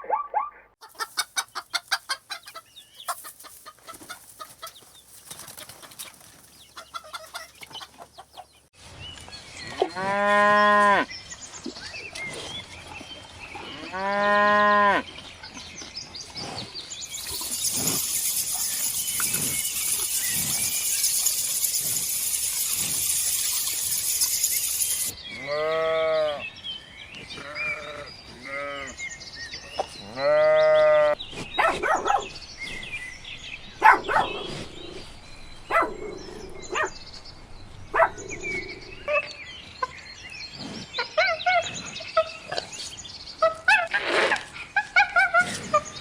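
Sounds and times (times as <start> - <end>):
farm animal bleating: 25.3 - 26.4, 27.4 - 29.0.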